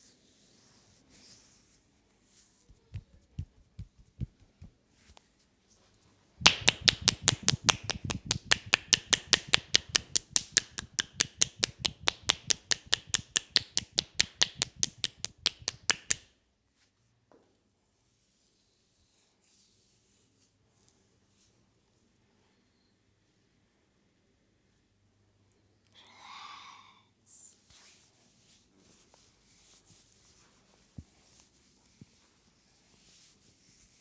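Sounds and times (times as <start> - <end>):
hands slapping on oiled skin: 2.7 - 4.8, 6.4 - 16.3.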